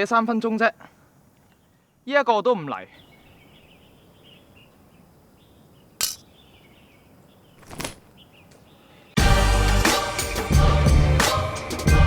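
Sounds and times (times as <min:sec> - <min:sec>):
faint birds chirping: 0:00.0 - 0:09.2
loud music with a beat: 0:09.2 - 0:12.0.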